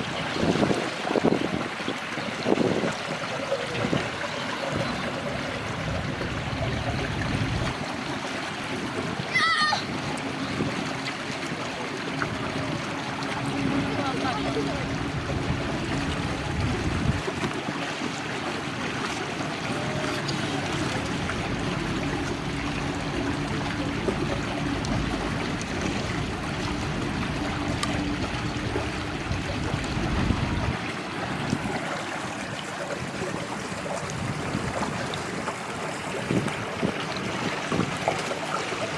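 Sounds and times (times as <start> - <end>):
river water rushing: 0.0 - 38.9
low hum and rumble: 4.2 - 7.8, 9.5 - 17.6, 19.0 - 37.2.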